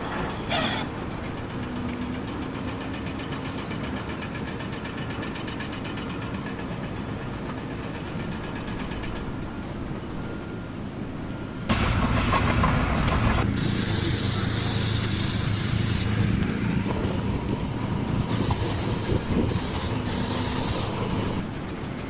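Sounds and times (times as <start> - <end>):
engine running: 0.1 - 22.0
hissing spray: 13.5 - 16.3, 18.3 - 21.3.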